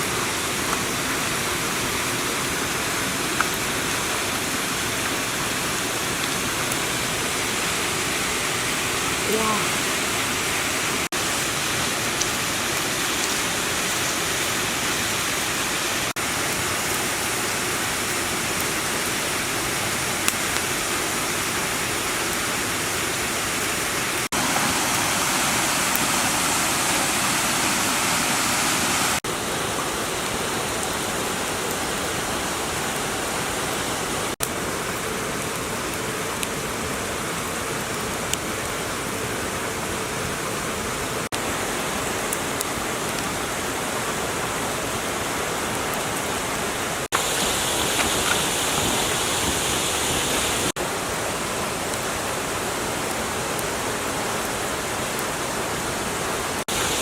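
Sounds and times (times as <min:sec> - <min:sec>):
steady rushing noise: 0:47.1 - 0:50.8.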